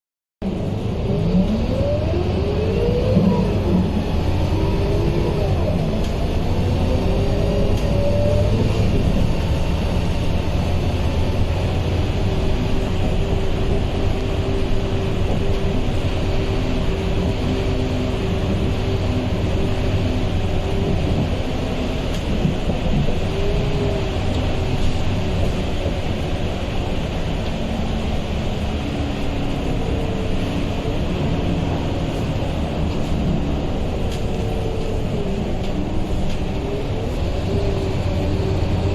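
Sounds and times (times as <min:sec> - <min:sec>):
diesel bus engine rumble: 0:00.4 - 0:38.9.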